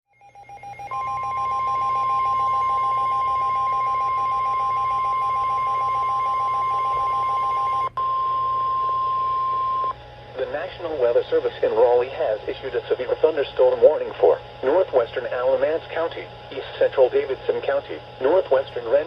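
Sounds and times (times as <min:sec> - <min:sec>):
high-pitched alarm tone: 0:00.1 - 0:09.9
rapidly pulsing beep: 0:00.1 - 0:09.9.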